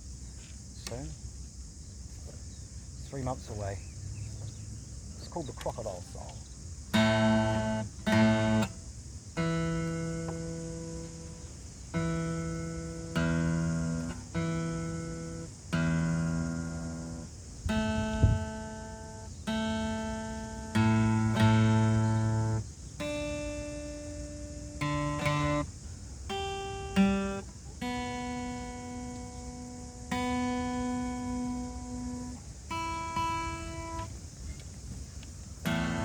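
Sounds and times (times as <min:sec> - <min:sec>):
guitar playing slow chords: 0:06.9 - 0:34.2, 0:35.6 - 0:36.0.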